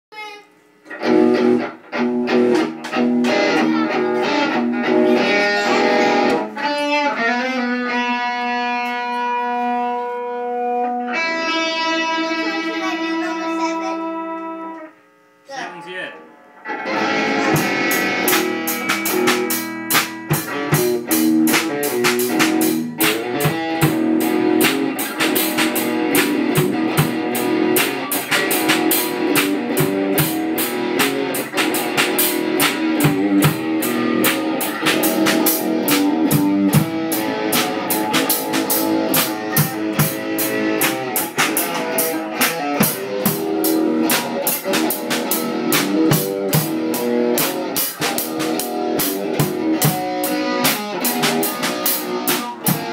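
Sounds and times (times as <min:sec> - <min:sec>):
sustained guitar notes: 0:00.2 - 0:52.9
drum kit playing fast beat: 0:01.0 - 0:06.8, 0:17.0 - 0:52.9.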